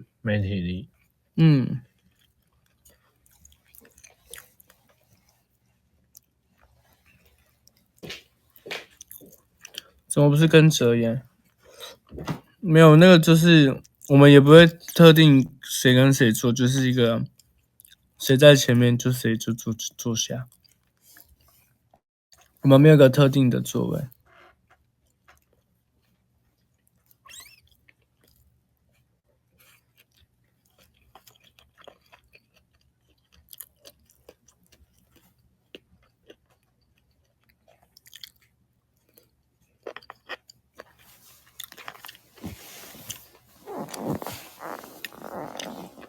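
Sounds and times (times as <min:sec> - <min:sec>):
person chewing food: 0:01.8 - 0:10.1, 0:17.3 - 0:18.1, 0:20.5 - 0:22.6, 0:24.1 - 0:46.0.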